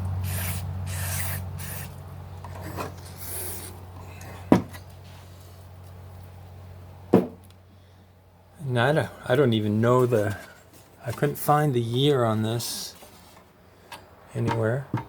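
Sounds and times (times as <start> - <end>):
sharp knocks: 7.1 - 7.4.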